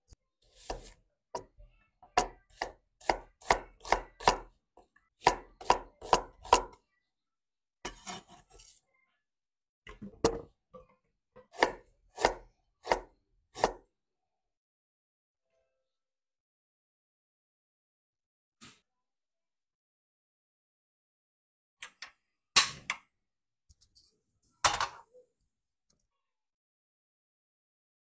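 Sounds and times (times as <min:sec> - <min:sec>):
knife chopping on cutting board: 0:00.6 - 0:01.5, 0:02.1 - 0:04.5, 0:05.2 - 0:06.8, 0:11.5 - 0:13.8.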